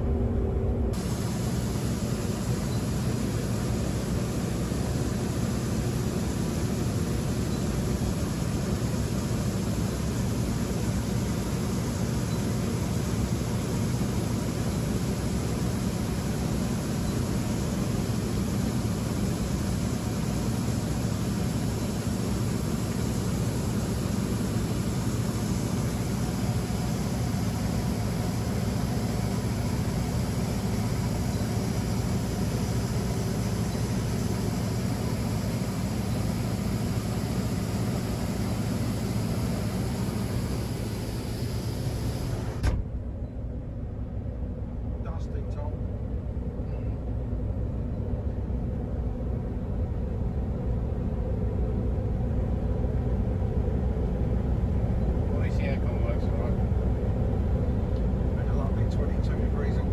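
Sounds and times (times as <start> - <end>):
farm machinery engine drone: 0.0 - 59.9
short thump: 42.6 - 42.9.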